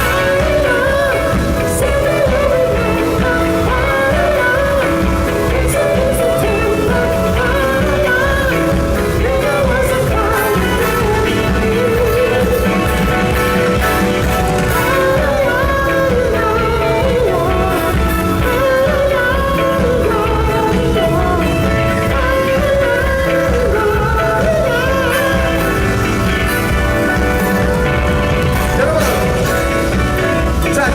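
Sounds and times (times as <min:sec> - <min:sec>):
live pop music with heavy beat: 0:00.0 - 0:30.9
person singing: 0:00.0 - 0:30.9.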